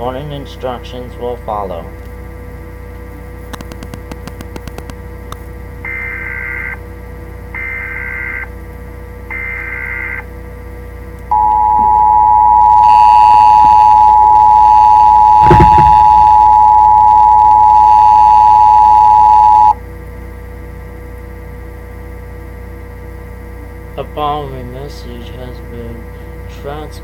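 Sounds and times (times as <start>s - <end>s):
low steady hum: 10.4s - 20.0s
two-tone attention signal: 11.3s - 19.8s
warbling data tone: 11.4s - 19.8s
brief thump: 15.4s - 16.6s.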